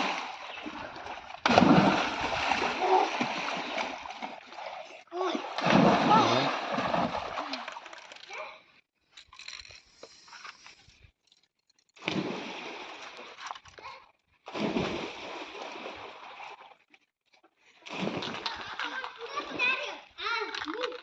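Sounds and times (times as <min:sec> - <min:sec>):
water splashing in pool: 0:00.0 - 0:08.1, 0:12.0 - 0:13.6, 0:14.5 - 0:16.9, 0:17.8 - 0:21.0.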